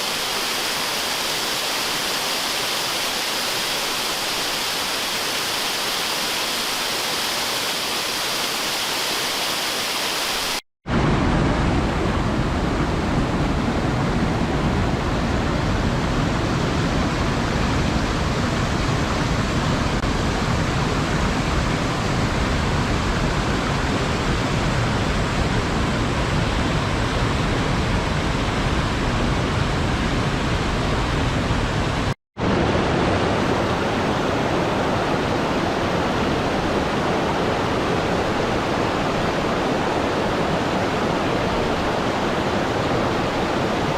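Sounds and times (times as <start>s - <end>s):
waterfall rushing: 0.0s - 10.6s, 32.4s - 43.9s.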